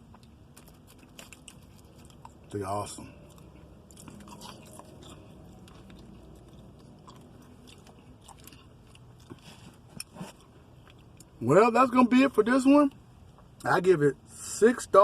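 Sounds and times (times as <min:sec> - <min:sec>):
person chewing crispy food: 0:00.0 - 0:11.4.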